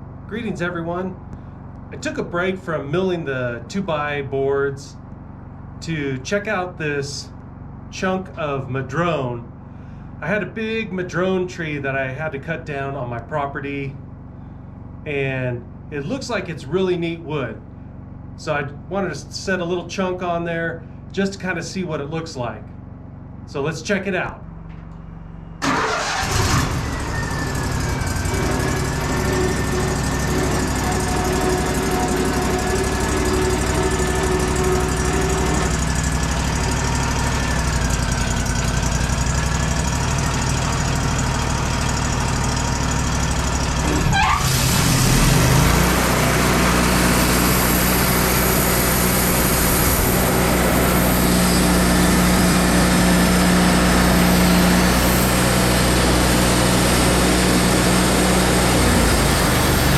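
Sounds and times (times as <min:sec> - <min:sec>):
sawmill engine running: 0:25.6 - 0:59.9.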